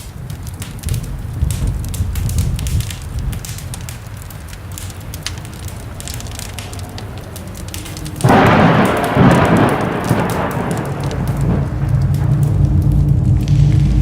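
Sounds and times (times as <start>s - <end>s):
faint crackles: 0.0s - 14.0s
low rumble: 5.1s - 14.0s
loud rushing noise: 5.9s - 14.0s.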